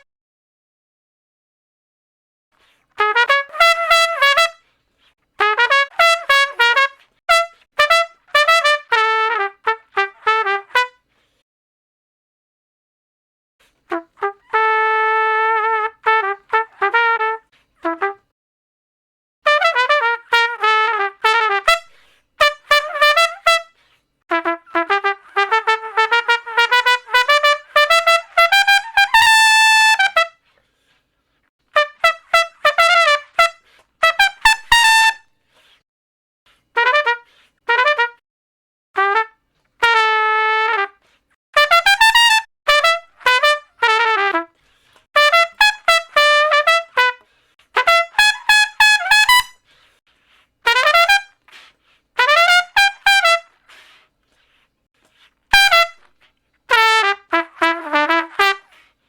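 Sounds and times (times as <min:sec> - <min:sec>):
solo trumpet playing: 0:03.0 - 0:04.7, 0:05.4 - 0:11.0, 0:13.9 - 0:18.3, 0:19.4 - 0:30.4, 0:31.7 - 0:35.3, 0:36.8 - 0:38.2, 0:39.0 - 0:41.0, 0:41.6 - 0:44.6, 0:45.2 - 0:49.8, 0:50.6 - 0:51.6, 0:52.2 - 0:53.9, 0:55.5 - 0:58.8.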